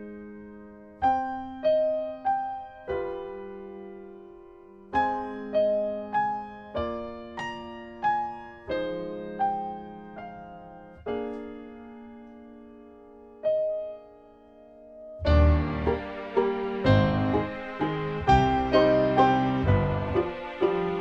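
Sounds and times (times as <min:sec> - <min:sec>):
slow piano melody: 0:00.0 - 0:21.0.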